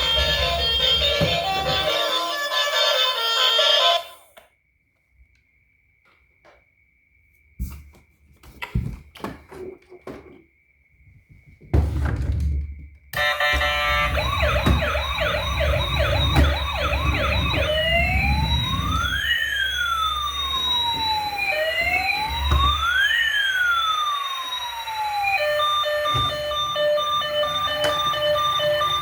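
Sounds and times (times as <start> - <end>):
electronic toy siren: 0.0 - 4.5, 13.2 - 29.0.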